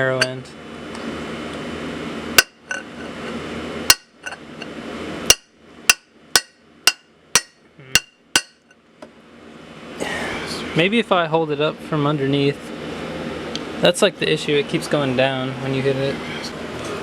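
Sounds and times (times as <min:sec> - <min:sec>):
hammer striking metal pipe: 0:02.4 - 0:02.6, 0:03.9 - 0:04.2, 0:05.3 - 0:08.7.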